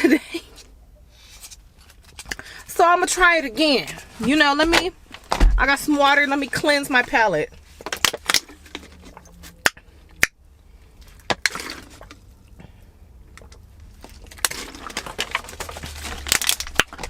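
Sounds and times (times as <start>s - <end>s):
low steady hum: 0.0s - 17.0s
water bottle clicking and crackling: 7.8s - 10.4s, 11.0s - 12.5s, 13.3s - 17.0s.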